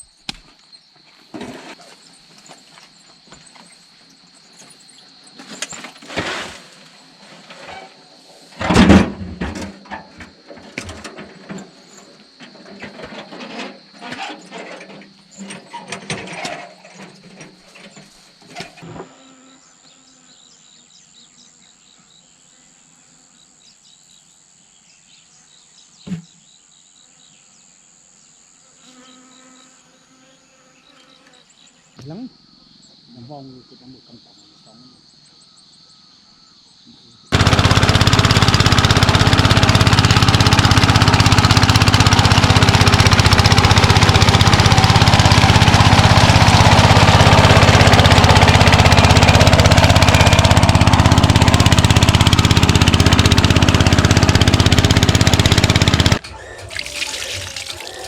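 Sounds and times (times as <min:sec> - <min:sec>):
knocks and clatter: 0:08.6 - 0:11.8.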